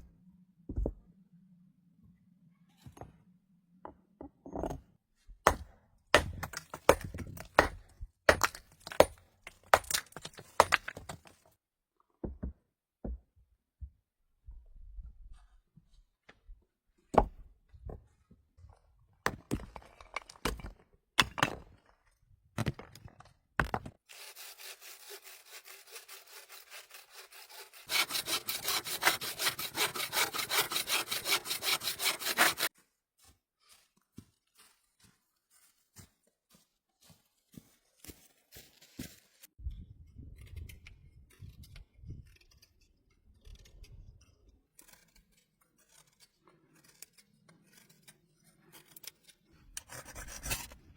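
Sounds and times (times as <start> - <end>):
saw cutting through wood: 24.1 - 32.7.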